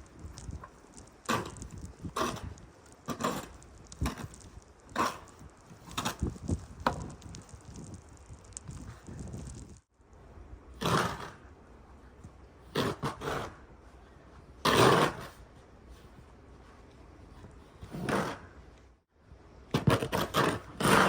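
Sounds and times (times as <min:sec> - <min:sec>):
snow shovel scraping snow: 0:00.0 - 0:07.0.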